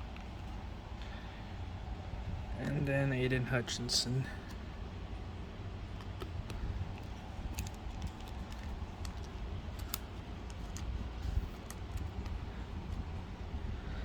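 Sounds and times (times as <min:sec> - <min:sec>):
steady low hum: 0:00.0 - 0:14.0
trading cards clicking and sliding: 0:05.9 - 0:13.1.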